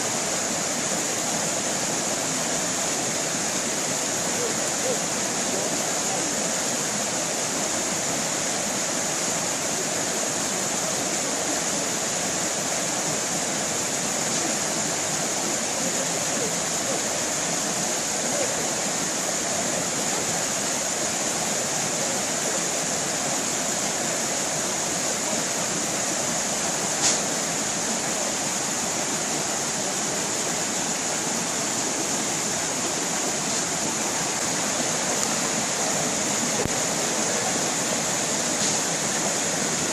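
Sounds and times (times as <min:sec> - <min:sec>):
stream water running: 0:00.0 - 0:39.9
short click: 0:27.0 - 0:27.2.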